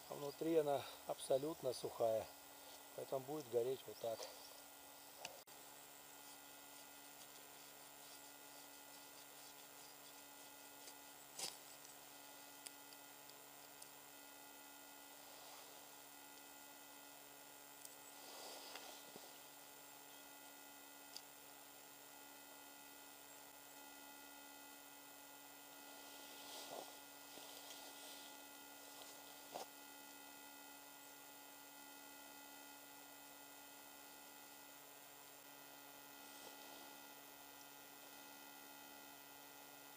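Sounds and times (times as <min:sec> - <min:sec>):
faint electrical hum: 0:00.0 - 0:39.9.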